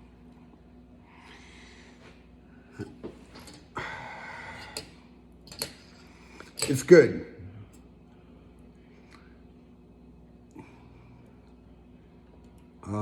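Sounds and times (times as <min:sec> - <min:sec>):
man breathing: 0:01.0 - 0:02.7, 0:03.7 - 0:05.0.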